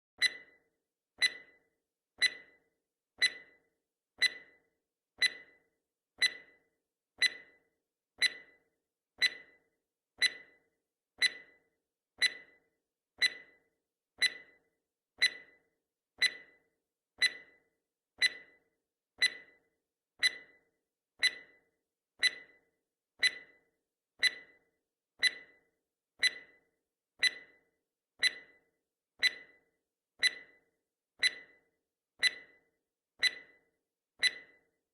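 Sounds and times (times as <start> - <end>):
clock ticking: 0.2 - 0.6, 1.2 - 1.6, 2.2 - 2.6, 3.2 - 3.6, 4.2 - 10.6, 11.2 - 12.6, 13.2 - 13.6, 14.2 - 14.6, 15.2 - 15.6, 16.2 - 16.6, 17.2 - 17.6, 18.2 - 18.6, 19.2 - 19.6, 20.2 - 20.6, 21.2 - 21.6, 22.2 - 22.6, 23.2 - 24.6, 25.2 - 25.6, 26.2 - 28.6, 29.2 - 32.6, 33.2 - 34.7.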